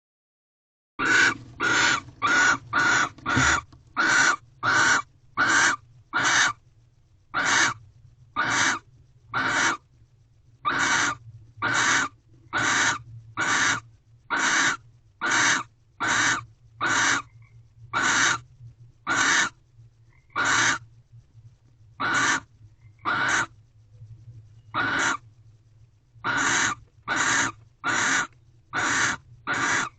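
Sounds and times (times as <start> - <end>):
owl hissing calls: 1.0 - 6.6, 7.3 - 7.8, 8.4 - 9.8, 10.6 - 18.4, 19.0 - 19.6, 20.2 - 20.8, 22.0 - 23.5, 24.7 - 25.2, 26.2 - 29.9
faint low hum: 1.0 - 29.9.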